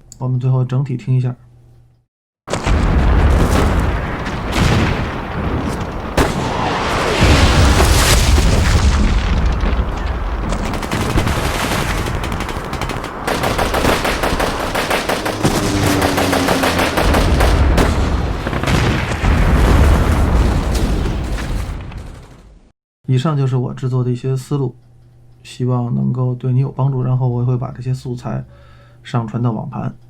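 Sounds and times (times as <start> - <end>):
explosion booms: 2.5 - 22.7
automatic gunfire: 10.4 - 19.2.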